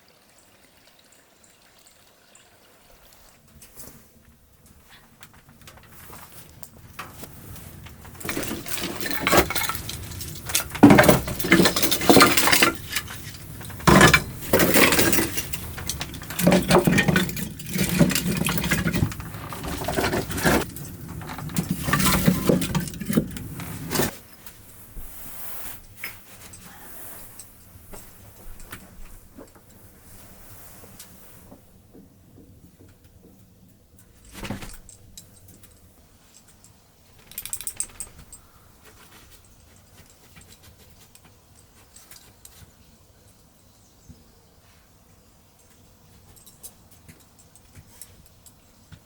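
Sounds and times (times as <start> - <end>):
hard objects clattering and clinking: 4.9 - 24.2, 36.4 - 38.4.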